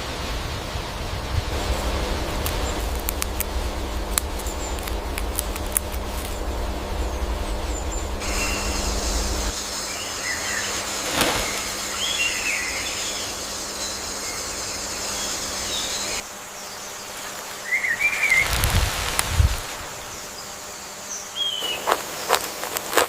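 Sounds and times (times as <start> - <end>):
low rumble: 0.0 - 9.6
background hum and high whine: 0.0 - 23.0
bird chirps: 6.4 - 16.7.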